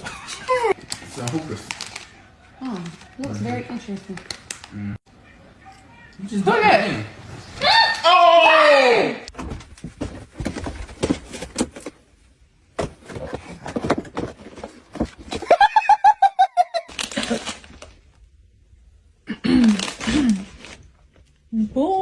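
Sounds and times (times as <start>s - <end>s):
person laughing: 0.0s - 0.8s, 15.4s - 17.6s.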